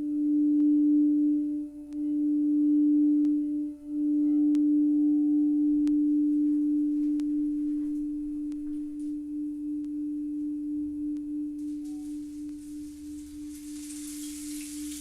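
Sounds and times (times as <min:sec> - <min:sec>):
crystal singing bowl tone: 0:00.0 - 0:15.0
faint light ticks: 0:07.0 - 0:07.4.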